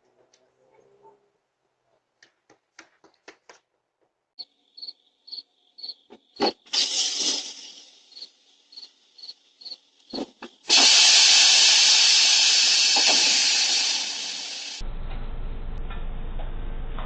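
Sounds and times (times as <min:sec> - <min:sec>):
loud steady hiss: 0:06.4 - 0:14.8
low rumbling noise: 0:14.7 - 0:17.0.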